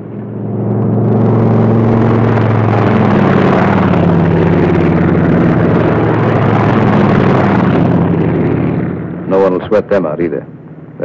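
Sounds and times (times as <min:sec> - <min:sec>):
piston aircraft engines droning: 0:00.0 - 0:11.0.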